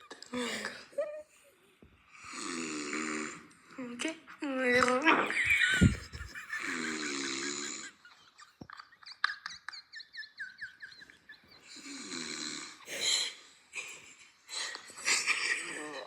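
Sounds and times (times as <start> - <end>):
man snoring: 2.2 - 3.5, 11.8 - 13.0.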